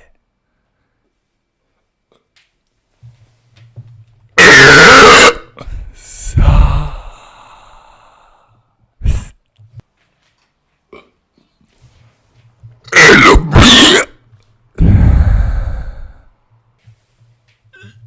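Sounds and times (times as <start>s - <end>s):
man burping: 4.4s - 5.6s, 12.9s - 14.2s
deep gas sound: 5.7s - 9.4s, 14.8s - 16.3s.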